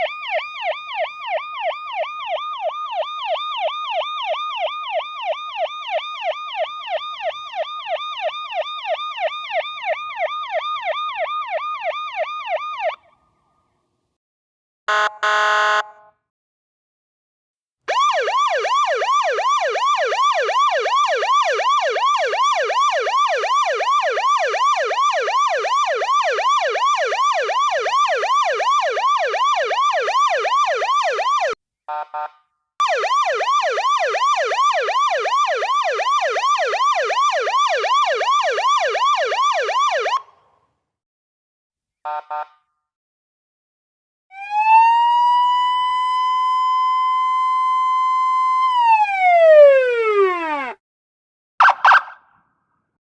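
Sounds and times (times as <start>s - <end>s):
police siren yelp: 0.0s - 13.1s, 17.9s - 31.6s, 32.8s - 40.3s, 44.3s - 50.8s, 51.6s - 52.3s.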